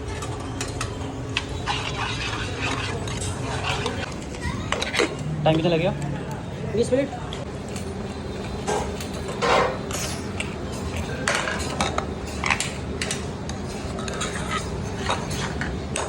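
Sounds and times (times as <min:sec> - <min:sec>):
low background hum: 0:00.0 - 0:16.0
metal utensils clinking on pots: 0:07.7 - 0:16.0.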